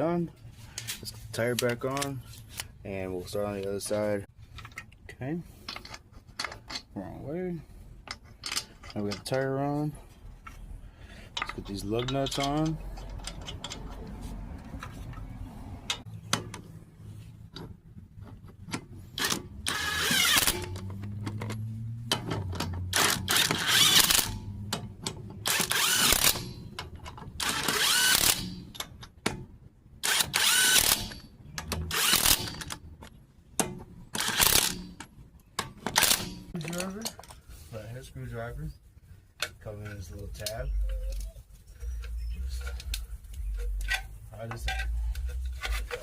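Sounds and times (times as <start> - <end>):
power tool running on lug nuts: 19.2 - 20.9, 22.9 - 24.4, 25.4 - 26.5, 27.4 - 28.6, 30.0 - 31.2, 31.9 - 32.7.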